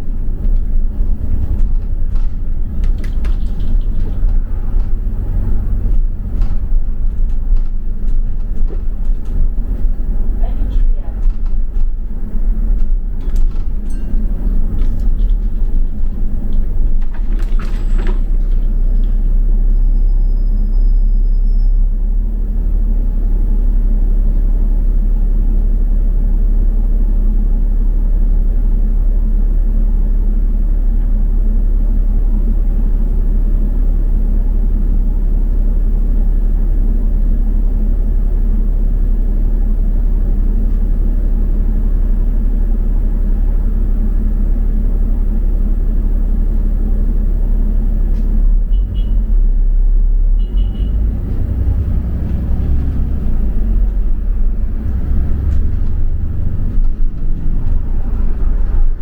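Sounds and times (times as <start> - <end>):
knocks and rattles: 0.0 - 19.5, 52.2 - 58.1
bus rumbling: 0.0 - 59.0.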